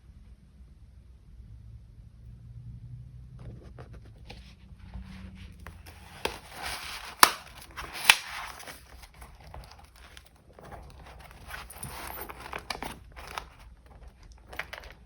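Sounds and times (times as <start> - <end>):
paper crinkling and rustling: 5.1 - 15.0.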